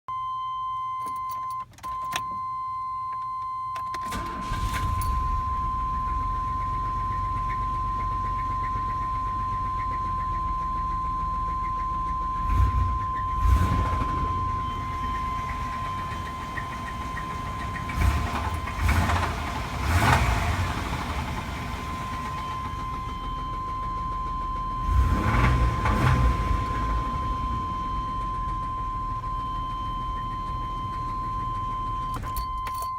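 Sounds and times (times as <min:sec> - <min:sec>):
engine revving with rod knock: 0:17.6 - 0:20.8.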